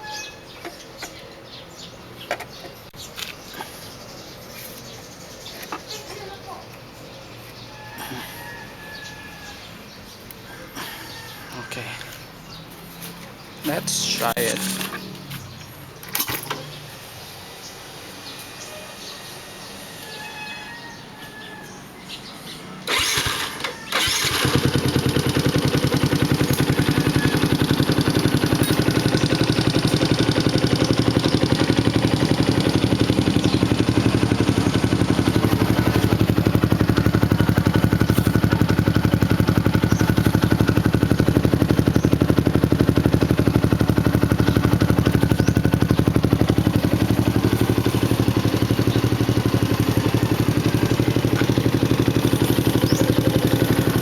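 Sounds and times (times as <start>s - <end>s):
motorcycle engine starting: 13.7s - 21.0s, 22.8s - 54.0s
motorcycle engine idling: 22.8s - 54.0s.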